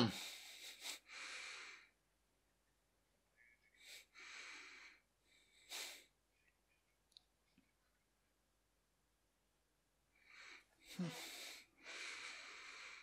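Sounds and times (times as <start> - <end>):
person breathing: 0.0 - 2.0, 3.7 - 6.2, 10.1 - 13.0.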